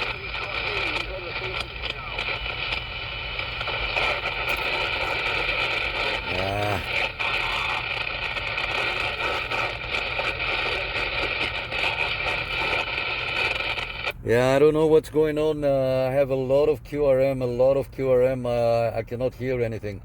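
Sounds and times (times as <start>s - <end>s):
radio static hiss: 0.0s - 14.6s
warbling tone or garbled voice: 6.2s - 8.0s.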